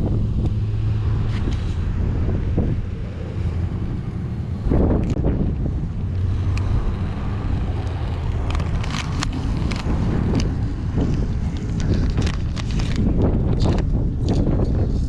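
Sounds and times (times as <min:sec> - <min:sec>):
wind buffeting microphone: 0:00.0 - 0:15.0
crackles and ticks: 0:07.7 - 0:14.8.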